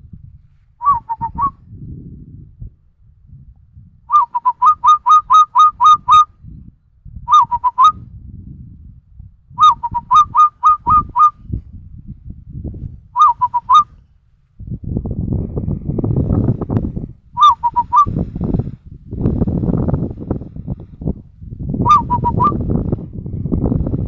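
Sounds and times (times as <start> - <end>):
person whistling dove call: 0.8 - 1.6, 4.1 - 6.3, 7.3 - 8.0, 9.6 - 11.4, 13.2 - 14.0, 17.4 - 18.2, 21.8 - 22.8.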